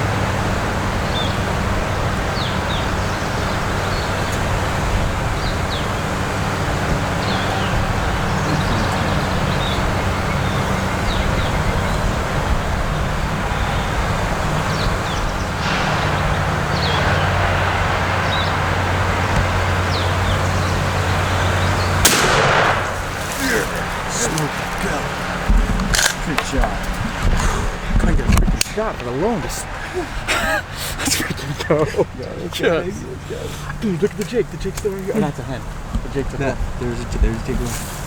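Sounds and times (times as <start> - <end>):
low hum: 15.0 - 27.7
shotgun blast: 22.0 - 23.9.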